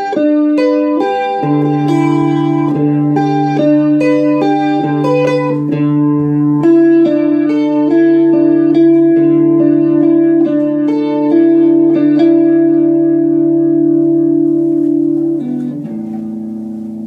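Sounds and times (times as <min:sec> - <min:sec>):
electric guitar melody: 0:00.0 - 0:17.0.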